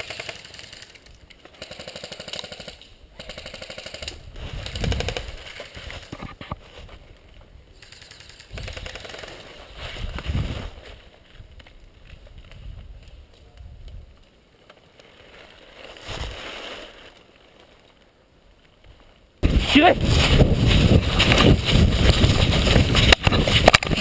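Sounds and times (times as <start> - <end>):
airsoft guns firing bursts: 1.5 - 5.3, 7.9 - 9.4.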